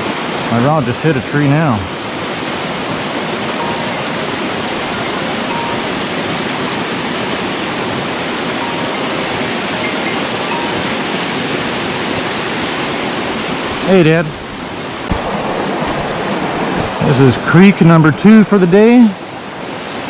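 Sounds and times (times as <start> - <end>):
creek water rushing over rocks: 0.0 - 20.0.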